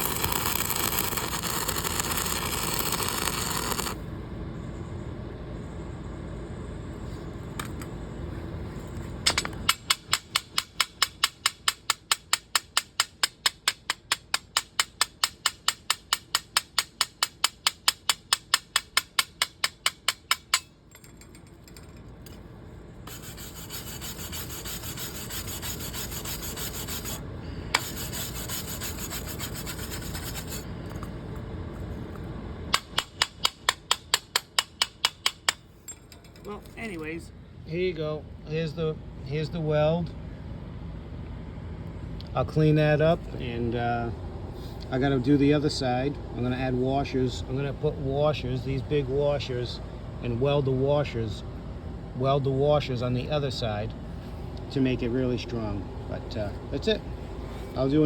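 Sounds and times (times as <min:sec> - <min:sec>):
hand tool strokes on steel: 0:23.1 - 0:30.7.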